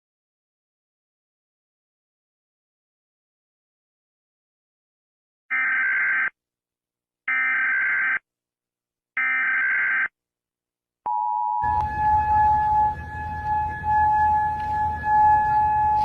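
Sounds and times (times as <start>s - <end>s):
noisy low rumble: 11.6s - 16.0s.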